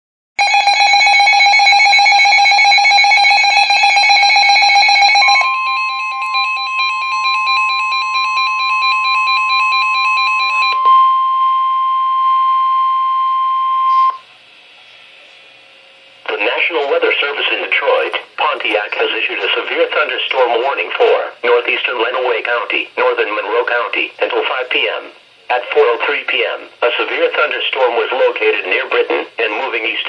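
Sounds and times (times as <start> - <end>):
pulsing buzzy alarm: 0.4 - 14.3
steady high tone: 0.4 - 14.3.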